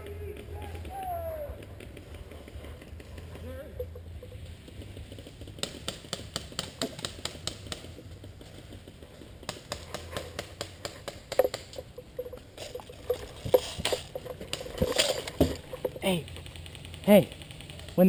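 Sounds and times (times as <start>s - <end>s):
sharp clicks and snaps: 9.5s - 18.0s
low steady hum: 11.2s - 17.0s.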